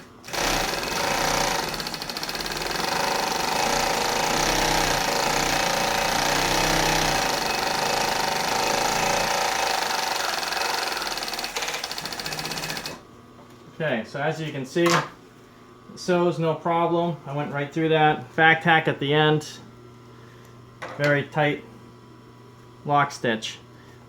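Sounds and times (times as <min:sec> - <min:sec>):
sewing machine running: 0:00.2 - 0:13.0.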